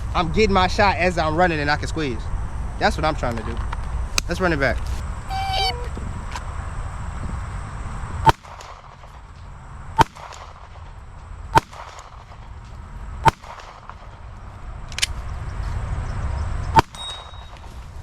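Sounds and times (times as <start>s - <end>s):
high ringing tone: 5.3s - 5.9s, 16.9s - 17.7s
pistol shots: 8.2s - 9.1s, 10.0s - 10.9s, 11.5s - 12.4s, 13.2s - 14.2s, 16.8s - 17.7s.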